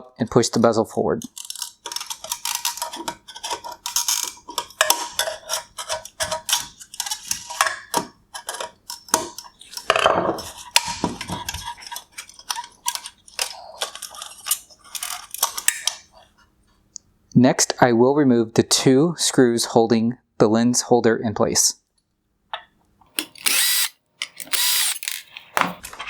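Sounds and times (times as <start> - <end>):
plastic parts clicking and rattling: 1.2 - 16.0, 23.1 - 26.0.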